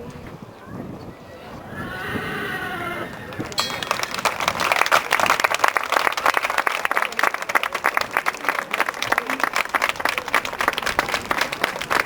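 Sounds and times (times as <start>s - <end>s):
audience applauding: 2.8s - 12.0s.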